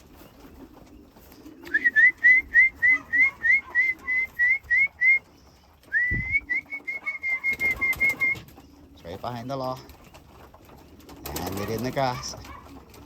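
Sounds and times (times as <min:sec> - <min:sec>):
person whistling: 0:01.7 - 0:05.2, 0:05.9 - 0:08.4.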